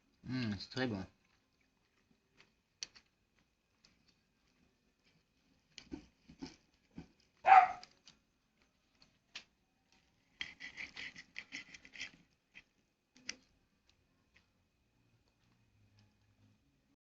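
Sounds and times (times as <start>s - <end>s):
dog barking: 7.4s - 7.9s
small clicks: 7.8s - 14.5s.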